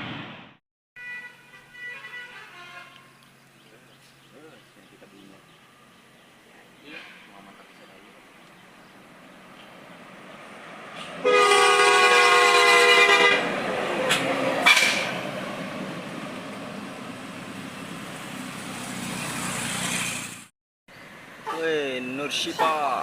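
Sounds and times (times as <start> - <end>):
multi-tone air horn chord: 1.0 - 3.2, 11.2 - 13.5
bus passing by: 1.4 - 23.0.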